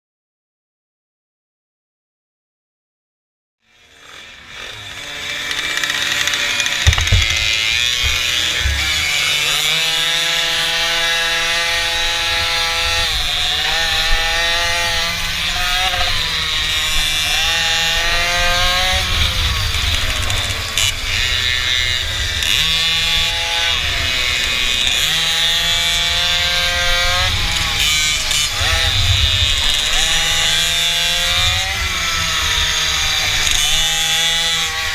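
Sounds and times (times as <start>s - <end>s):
mini bike engine revving: 3.6s - 34.9s.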